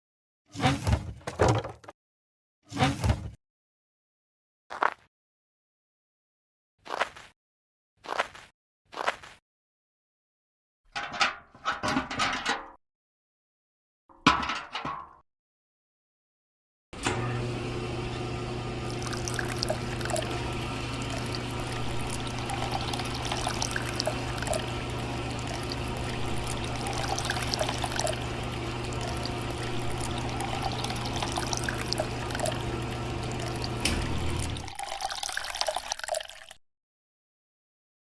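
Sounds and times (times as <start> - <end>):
small electric motor humming: 17.2 - 34.7
water pouring and trickling: 18.8 - 36.6.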